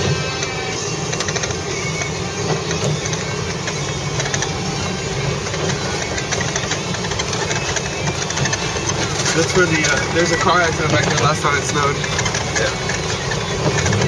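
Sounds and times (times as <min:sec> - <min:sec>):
car engine and road noise: 0:00.0 - 0:14.0
tyres crackling on packed snow: 0:00.5 - 0:14.0.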